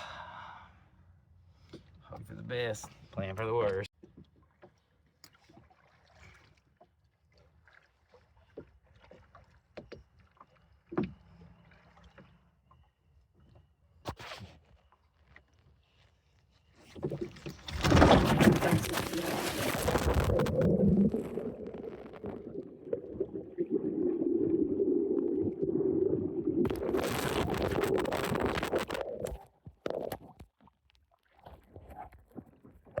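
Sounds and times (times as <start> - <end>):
water splashing around boat: 3.6 - 12.7, 16.8 - 29.4.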